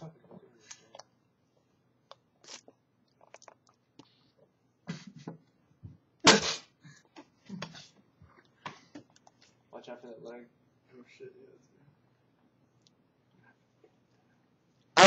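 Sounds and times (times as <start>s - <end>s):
person sneezing: 6.2s - 6.8s.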